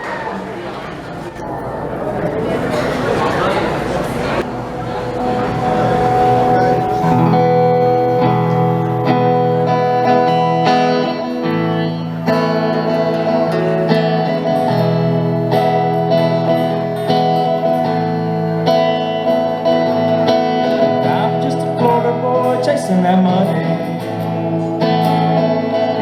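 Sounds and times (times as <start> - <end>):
country guitar playing: 1.4 - 26.0.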